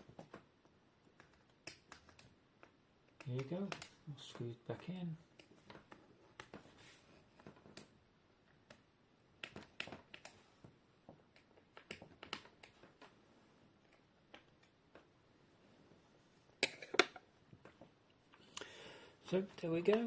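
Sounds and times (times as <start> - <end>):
plastic clicks and taps: 1.1 - 4.0.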